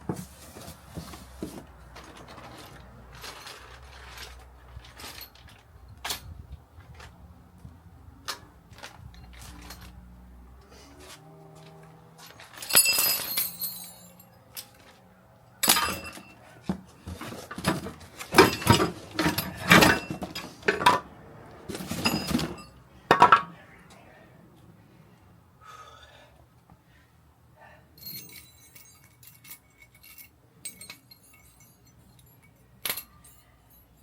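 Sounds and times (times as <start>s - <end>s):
metal clinking and clanking: 0.1s - 7.1s, 8.2s - 10.1s, 11.6s - 15.0s, 15.6s - 23.6s, 28.0s - 34.0s.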